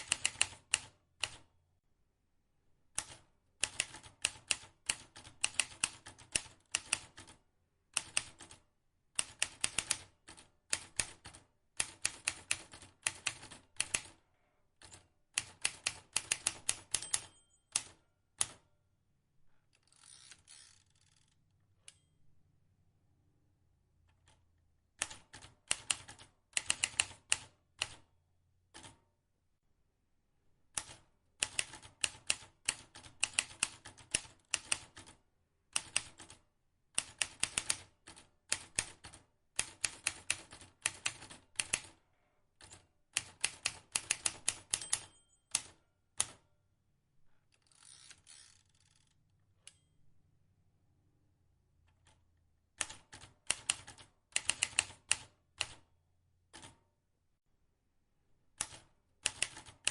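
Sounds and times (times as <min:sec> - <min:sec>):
typewriter key strikes: 0:16.4 - 0:18.5, 0:44.0 - 0:45.8.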